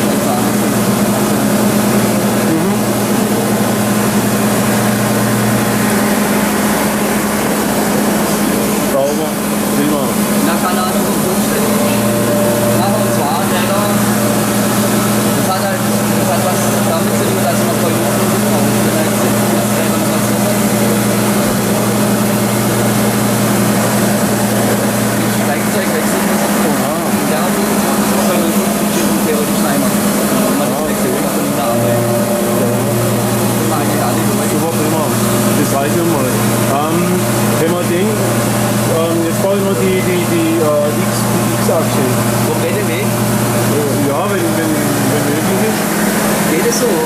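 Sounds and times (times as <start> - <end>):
lower hum: 0.0 - 47.0
milling machine humming: 0.0 - 47.0
noisy whir: 0.0 - 47.0.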